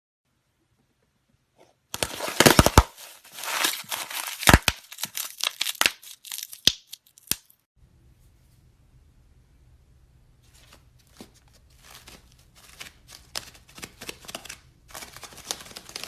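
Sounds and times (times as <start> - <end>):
slime bubbles crackling and popping: 2.0 - 7.3.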